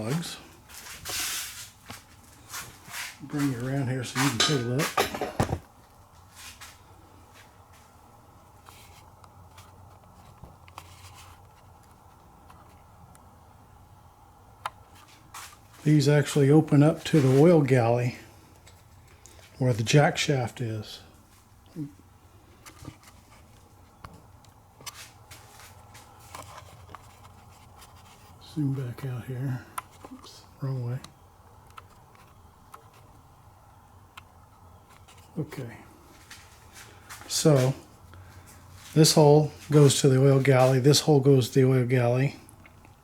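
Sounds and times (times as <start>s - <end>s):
light clicks and rustles of handling: 0.0s - 13.3s, 14.6s - 43.0s
handling clicks and rustles: 8.6s - 13.3s, 22.6s - 37.9s.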